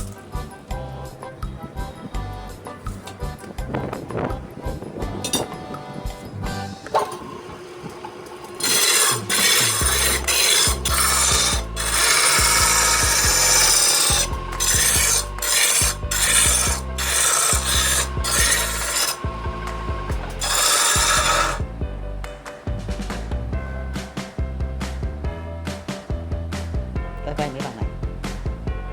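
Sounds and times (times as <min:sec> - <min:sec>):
tool scraping wood on a lathe: 0:06.8 - 0:21.8.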